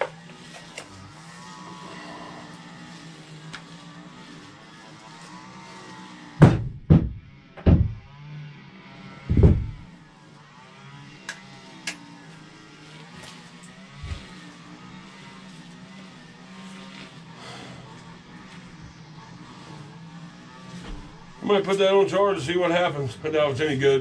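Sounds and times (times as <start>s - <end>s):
dull heavy knocks: 6.4s - 8.1s, 9.3s - 9.9s
low steady hum: 9.3s - 9.9s.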